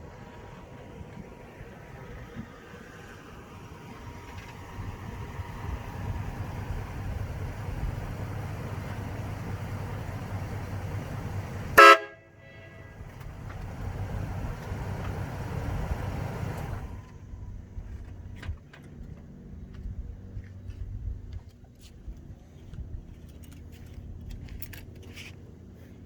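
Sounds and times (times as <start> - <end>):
air horn blast: 11.7 - 13.1.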